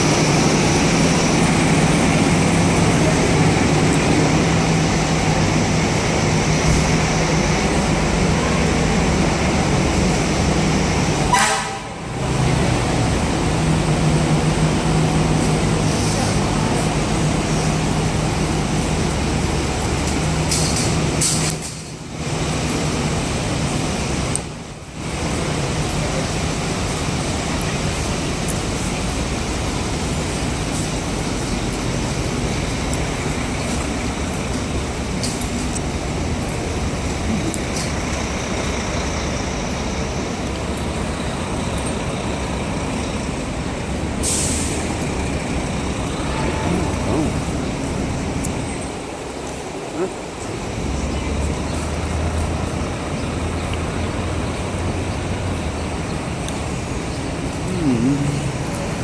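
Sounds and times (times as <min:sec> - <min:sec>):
city street traffic: 0:00.0 - 0:59.0
diesel engine idling: 0:21.8 - 0:59.0
air brakes hissing: 0:44.2 - 0:45.4.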